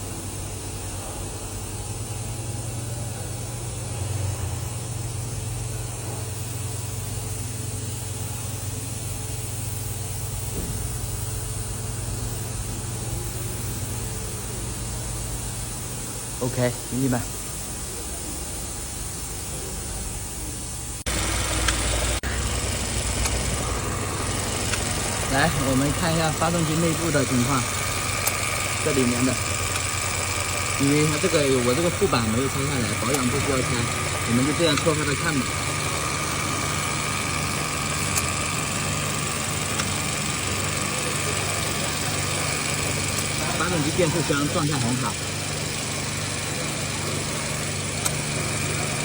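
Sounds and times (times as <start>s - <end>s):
workshop machinery humming: 0.0s - 49.0s
car engine idling: 20.0s - 49.0s.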